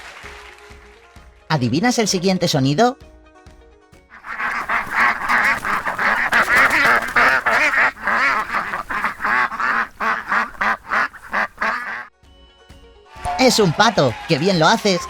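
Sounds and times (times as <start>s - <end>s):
ducks quacking: 4.1s - 12.1s.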